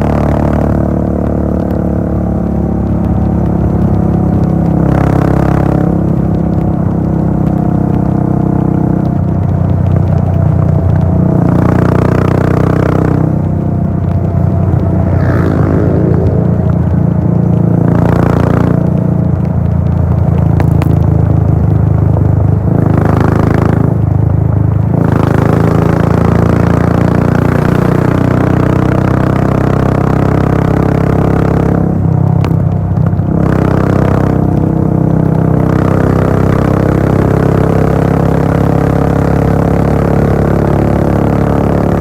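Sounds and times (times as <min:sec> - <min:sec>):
motorcycle engine cruising: 0:00.0 - 0:42.0
rushing noise: 0:13.8 - 0:19.1.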